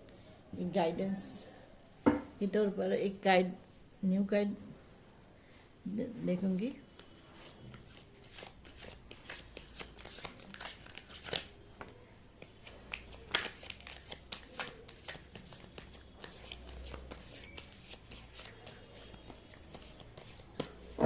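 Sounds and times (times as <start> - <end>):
cards being shuffled: 7.8 - 20.9.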